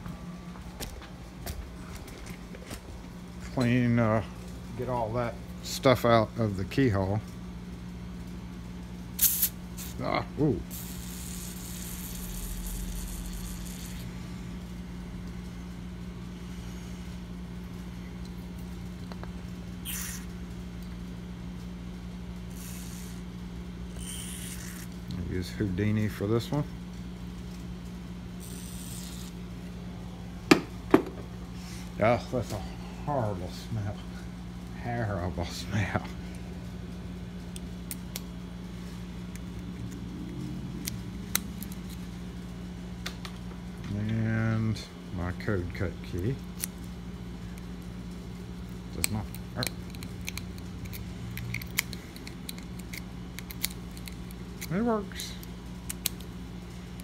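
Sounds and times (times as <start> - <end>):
steady low hum: 0.0 - 57.0
aerosol spray hissing: 9.2 - 9.9.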